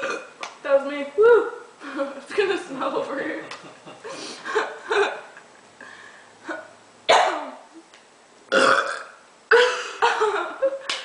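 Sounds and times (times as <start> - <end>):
person burping loudly: 0.0 - 0.3, 8.5 - 9.8.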